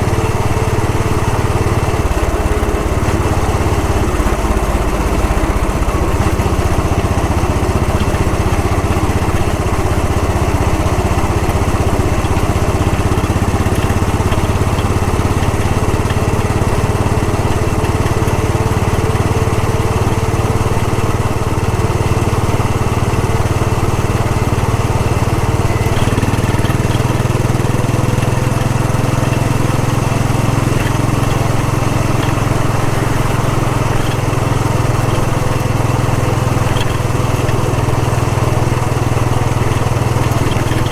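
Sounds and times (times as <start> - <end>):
motorcycle engine thudding: 0.0 - 40.9.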